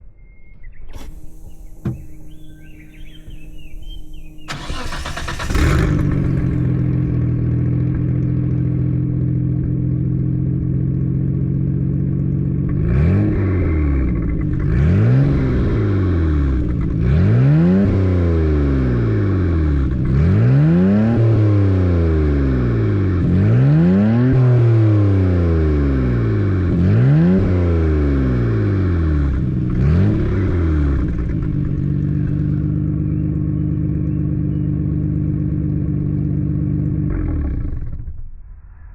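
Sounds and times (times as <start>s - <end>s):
car engine starting and idling: 0.7s - 38.9s
car engine revving: 0.9s - 38.9s.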